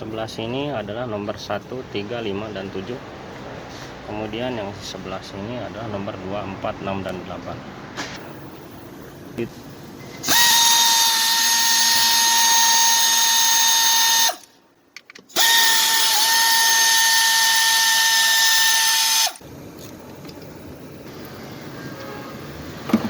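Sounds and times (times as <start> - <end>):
power tool motor running: 10.2 - 14.5, 15.3 - 19.4.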